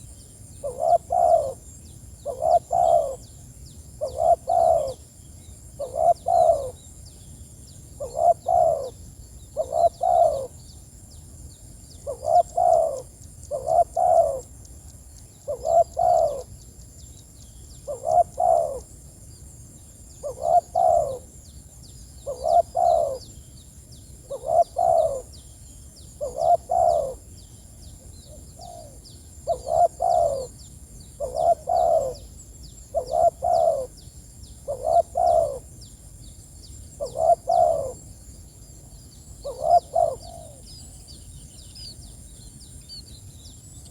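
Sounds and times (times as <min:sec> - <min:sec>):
dove cooing: 0:00.6 - 0:03.3, 0:04.0 - 0:05.0, 0:05.8 - 0:06.8, 0:08.0 - 0:10.6, 0:12.0 - 0:14.5, 0:15.5 - 0:16.5, 0:17.8 - 0:18.9, 0:20.2 - 0:21.3, 0:22.2 - 0:23.3, 0:24.2 - 0:25.4, 0:26.2 - 0:27.3, 0:28.3 - 0:30.6, 0:31.2 - 0:32.3, 0:32.9 - 0:34.0, 0:34.6 - 0:35.7, 0:37.0 - 0:38.1, 0:39.4 - 0:40.6.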